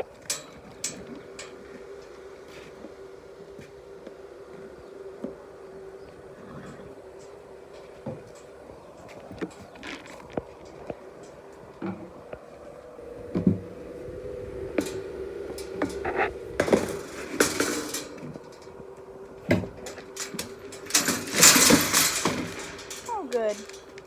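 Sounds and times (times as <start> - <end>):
faint steady hum: 0.0 - 24.0
feed pans clattering: 14.7 - 24.0.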